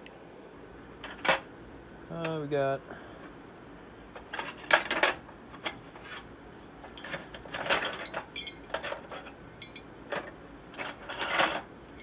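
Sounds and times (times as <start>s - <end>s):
steel chisels clinking together: 7.0s - 8.9s, 9.6s - 10.4s, 11.2s - 12.0s.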